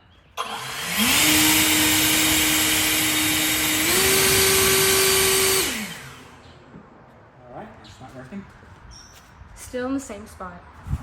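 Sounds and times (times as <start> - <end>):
electric air blower whine: 0.4 - 6.5.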